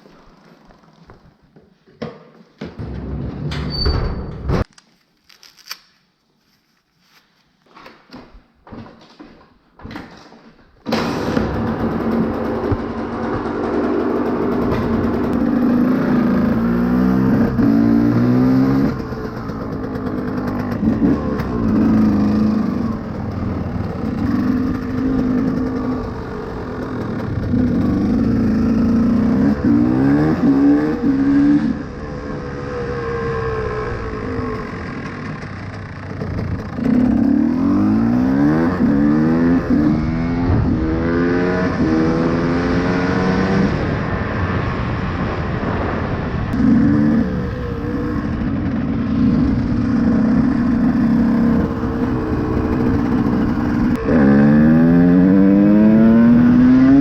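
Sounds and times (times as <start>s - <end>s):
two-stroke motorcycle engine revving: 11.1s - 44.2s, 46.5s - 57.0s.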